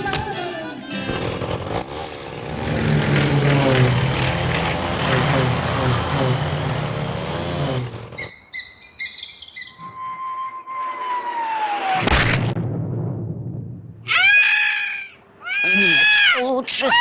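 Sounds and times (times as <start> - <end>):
bird-like tweets: 8.0 - 10.5
wobbling cartoon rumble: 12.1 - 14.3.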